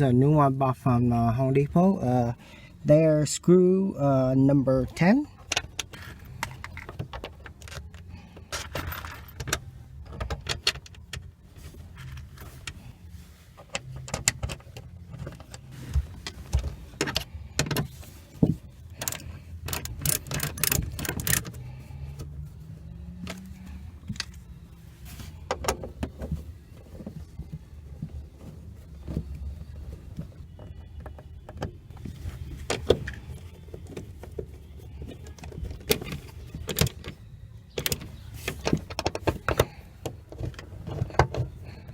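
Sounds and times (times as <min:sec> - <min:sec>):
metallic clicks and rattles of tools: 0:05.4 - 0:11.3, 0:19.0 - 0:21.7.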